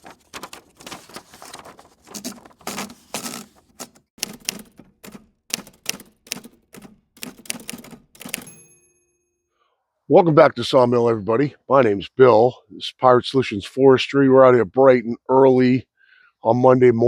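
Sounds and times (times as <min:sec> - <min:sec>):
typewriter keys clacking: 0:00.0 - 0:08.8
typewriter bell ringing: 0:05.5 - 0:09.3.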